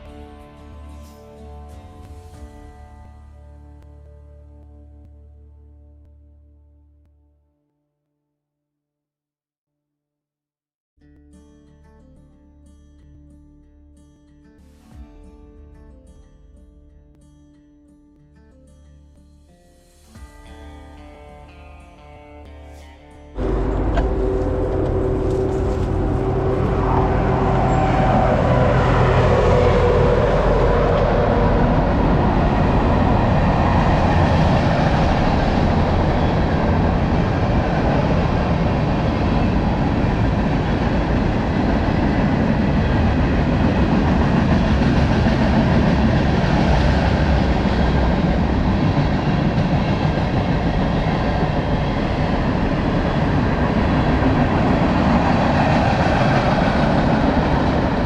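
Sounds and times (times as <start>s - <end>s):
bicycle tyres rolling: 23.4s - 27.9s
wind rumbling: 23.4s - 58.0s.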